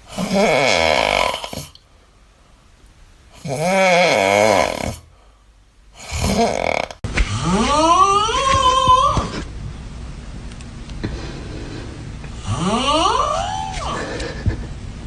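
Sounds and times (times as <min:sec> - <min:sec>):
person snoring: 0:00.0 - 0:01.8, 0:03.4 - 0:05.1, 0:06.0 - 0:08.0, 0:12.4 - 0:14.5.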